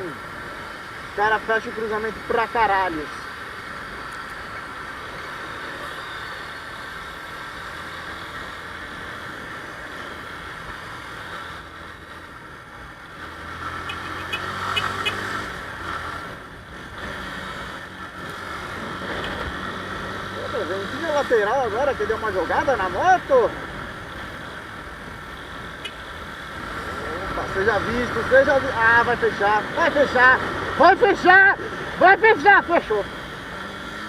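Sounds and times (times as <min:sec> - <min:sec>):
city traffic noise: 0:00.0 - 0:34.0
motorcycle engine running: 0:03.6 - 0:30.7.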